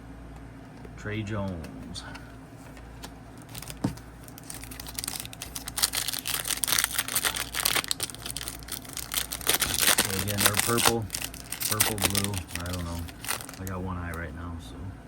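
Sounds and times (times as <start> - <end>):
plastic wrapper crinkling: 3.4 - 14.2.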